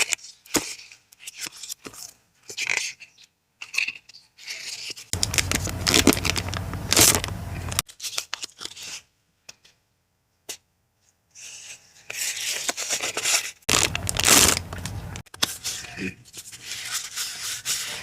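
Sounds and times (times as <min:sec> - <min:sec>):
paper rustling and tearing: 0:04.4 - 0:09.0, 0:11.5 - 0:18.0.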